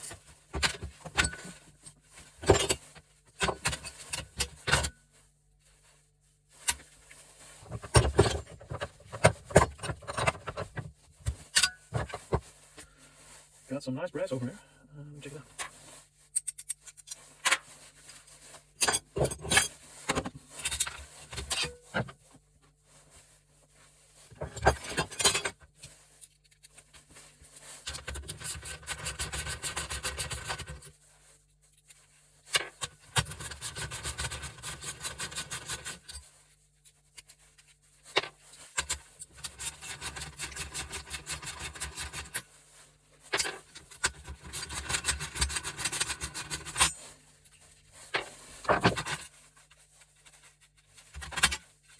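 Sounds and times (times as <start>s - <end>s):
knocks and clanks on metal: 7.6s - 12.4s.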